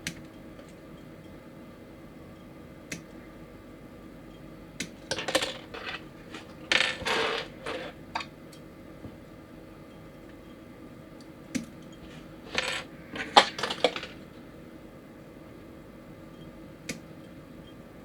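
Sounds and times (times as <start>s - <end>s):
plastic model parts clattering: 5.1s - 8.3s, 12.0s - 14.2s.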